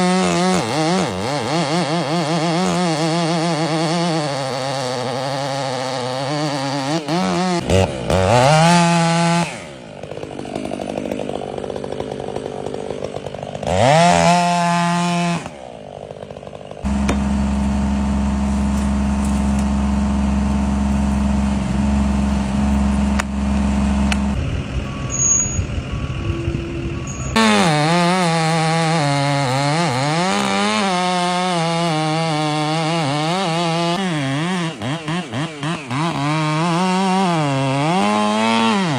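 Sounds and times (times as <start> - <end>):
chainsaw cutting wood: 0.0 - 24.6, 27.0 - 38.9
deeper steady engine: 14.8 - 29.7.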